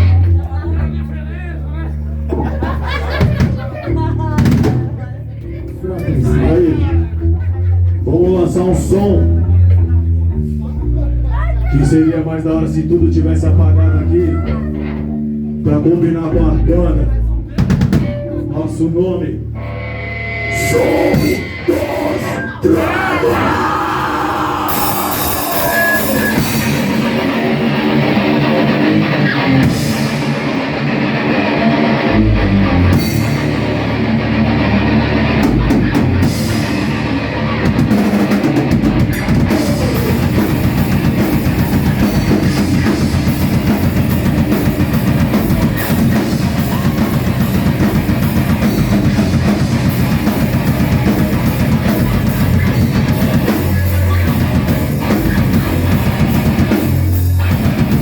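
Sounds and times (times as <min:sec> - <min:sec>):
rock band playing: 0:01.8 - 0:11.7, 0:14.2 - 0:58.0
drum hits: 0:03.2 - 0:05.0, 0:17.6 - 0:18.4, 0:37.6 - 0:58.0
electric guitar: 0:19.4 - 0:58.0.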